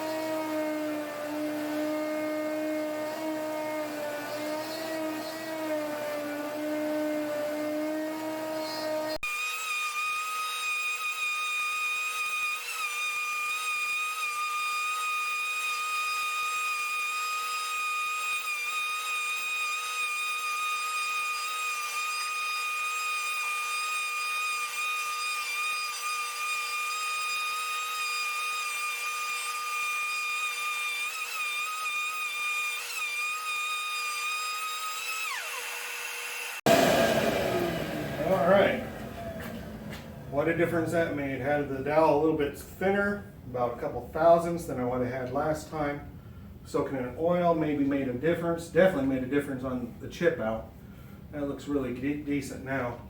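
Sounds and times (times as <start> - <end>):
shop vacuum hum: 0.0 - 9.2, 35.2 - 42.7
wood router whining: 0.0 - 41.2.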